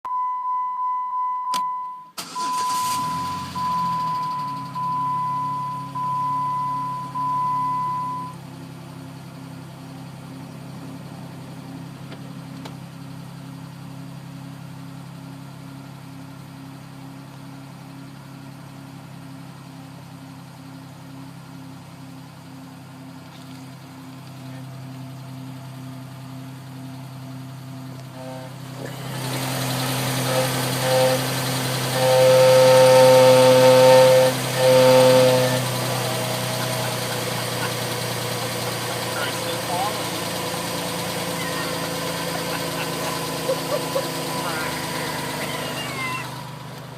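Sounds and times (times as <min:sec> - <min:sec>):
dashboard warning chime beeping: 0:00.0 - 0:08.4
car engine cranking and idling: 0:01.2 - 0:46.9
pulsing high-pitched engine noise: 0:28.2 - 0:46.7.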